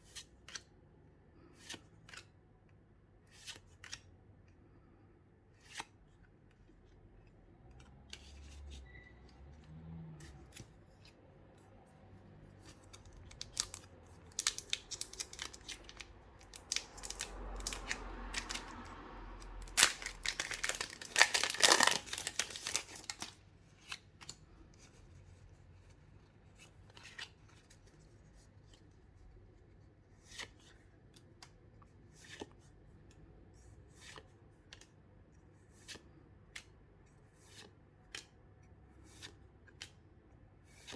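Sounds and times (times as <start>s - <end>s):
cardboard and cards clicking: 12.6s - 24.4s
plastic wrap and foil crinkling: 13.0s - 23.4s.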